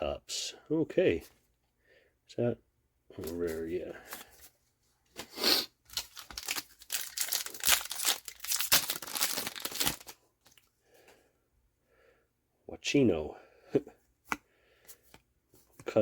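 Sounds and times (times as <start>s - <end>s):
foil wrapper tearing and crinkling: 5.9s - 10.2s.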